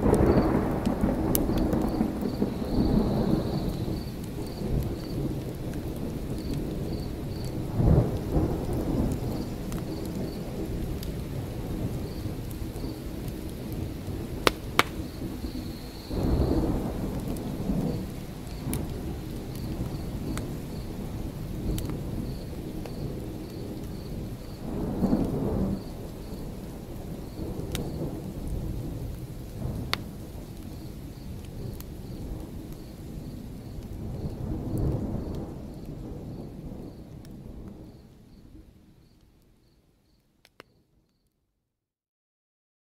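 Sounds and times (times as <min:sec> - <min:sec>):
low rolls of thunder: 0:00.0 - 0:38.8
steady rain: 0:00.0 - 0:40.7
sharp crackles: 0:12.0 - 0:20.6.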